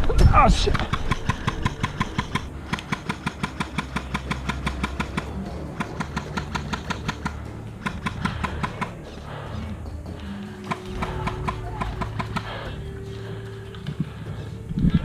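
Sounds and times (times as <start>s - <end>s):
low rumble of wind: 0.0s - 15.0s
airsoft gun firing: 0.7s - 9.0s.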